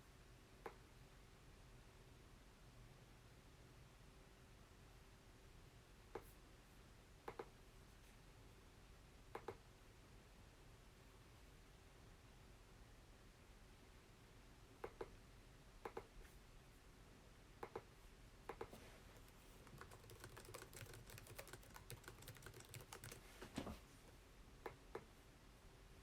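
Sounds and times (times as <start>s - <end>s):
keyboard and mouse clicking: 18.5s - 23.2s.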